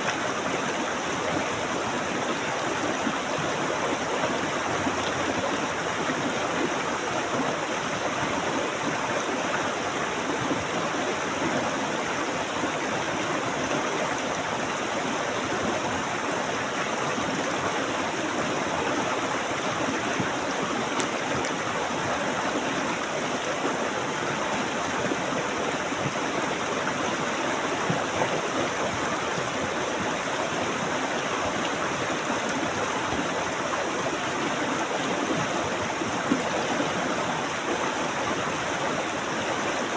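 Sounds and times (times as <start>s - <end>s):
stream water rushing and gurgling: 0.0s - 39.9s.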